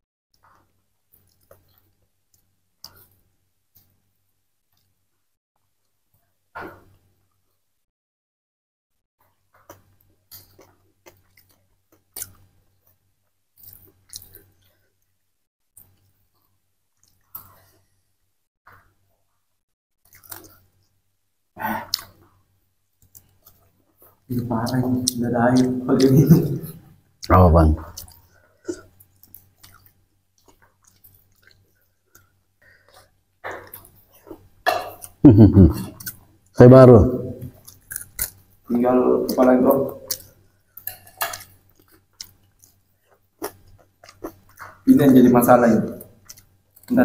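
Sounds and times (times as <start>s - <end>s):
person chewing crunchy food: 9.3s - 13.0s, 13.6s - 15.0s, 15.8s - 18.0s, 20.0s - 20.9s, 21.8s - 22.4s, 27.2s - 36.4s, 37.5s - 38.7s, 40.0s - 44.9s, 46.0s - 46.9s
people eating: 23.1s - 32.4s, 33.0s - 36.3s.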